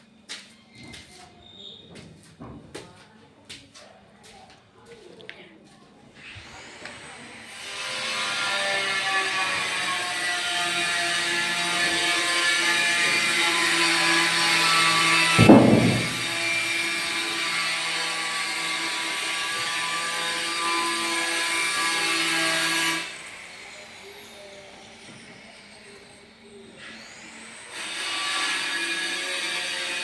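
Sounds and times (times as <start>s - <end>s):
loud bang: 15.4s - 16.4s.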